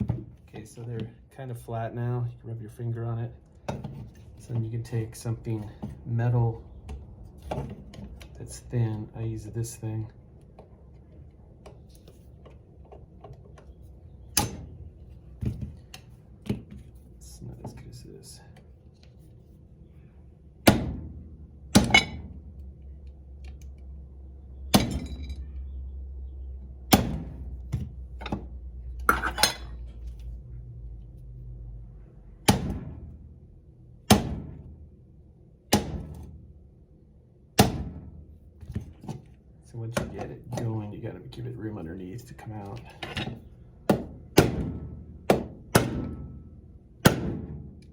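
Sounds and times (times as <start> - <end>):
hammer striking metal punch: 14.4 - 14.7, 20.6 - 22.4, 24.7 - 25.4, 26.9 - 27.5, 32.4 - 33.2, 34.1 - 34.7, 35.7 - 36.4, 37.6 - 38.2, 43.1 - 47.8.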